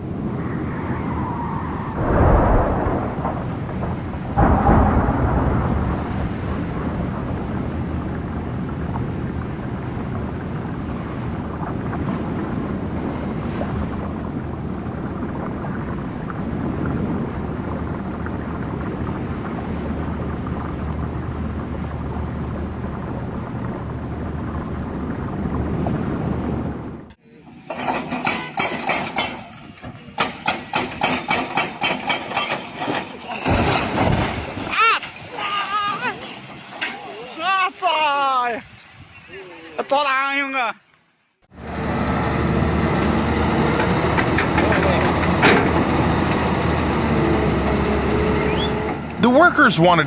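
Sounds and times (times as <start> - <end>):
heavy machine engine rumbling: 1.8 - 16.2, 41.5 - 50.0.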